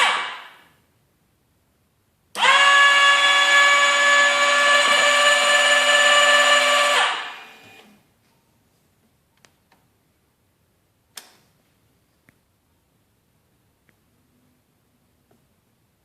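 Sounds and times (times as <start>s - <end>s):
motorcycle electric starter whirring: 2.4s - 7.9s.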